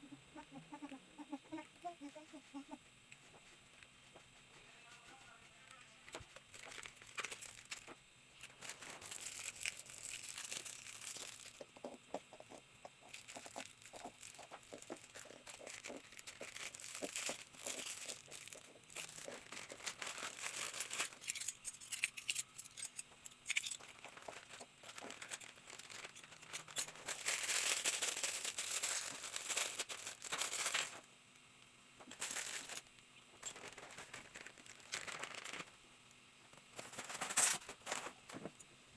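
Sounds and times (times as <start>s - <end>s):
plastic packaging crinkling and tearing: 6.1s - 11.7s, 13.0s - 31.1s, 32.0s - 35.8s, 36.7s - 38.5s.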